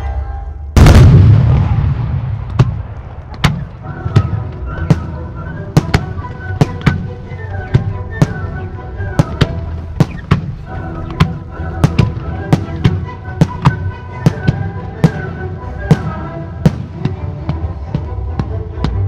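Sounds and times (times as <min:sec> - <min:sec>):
music: 0:00.0 - 0:01.0, 0:01.6 - 0:19.0
firework shell booming: 0:00.8 - 0:03.7.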